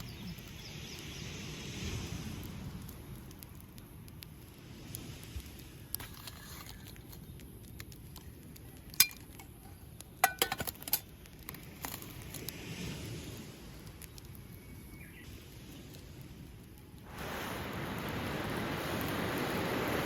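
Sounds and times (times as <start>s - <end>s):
waves on the shore: 0.0s - 6.0s, 12.1s - 14.3s, 15.2s - 20.0s
metal cookware clinking: 10.2s - 11.0s.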